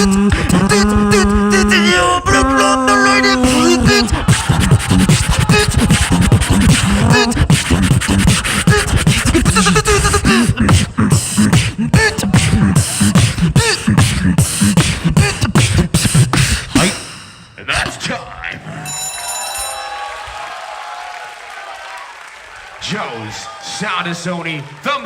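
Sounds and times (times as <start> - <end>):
beatboxing: 0.0 - 18.0.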